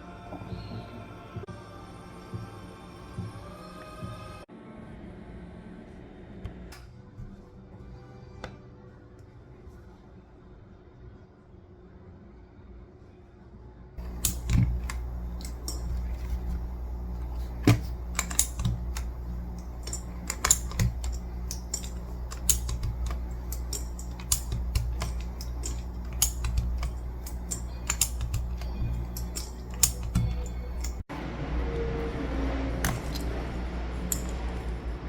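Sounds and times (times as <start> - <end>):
mechanical keyboard clicking: 14.0 - 31.0
steady low hum: 14.0 - 35.0.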